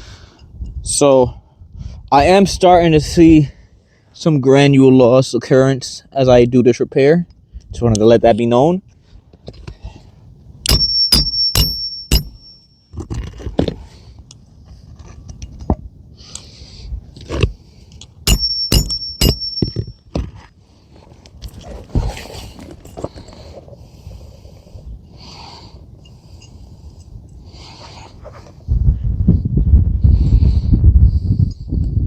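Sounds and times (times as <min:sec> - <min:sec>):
hammer blows with metallic ring: 0:10.7 - 0:12.9, 0:18.3 - 0:20.1
scraping and rustling on shingles: 0:20.3 - 0:24.8.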